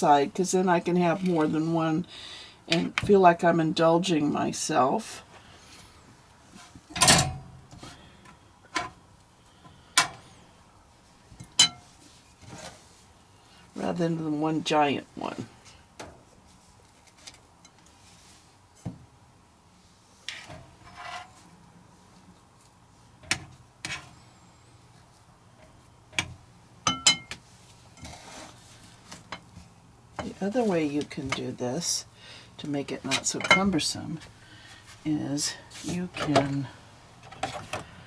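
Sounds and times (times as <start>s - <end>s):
utensil clinking on baking pan: 26.9s - 27.4s.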